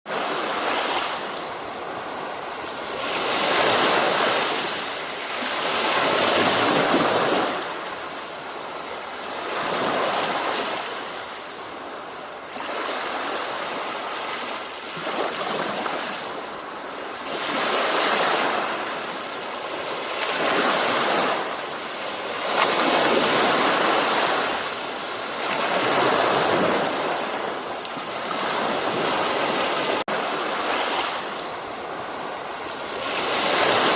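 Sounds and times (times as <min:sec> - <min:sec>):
waves breaking on a beach: 0:00.1 - 0:33.9.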